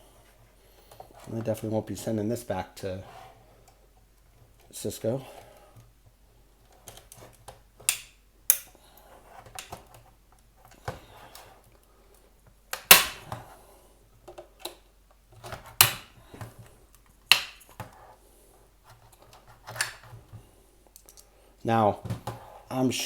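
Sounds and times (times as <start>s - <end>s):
plastic case snapping: 12.8s - 13.4s, 17.3s - 17.7s
plastic scraping and fumbling: 21.9s - 22.7s.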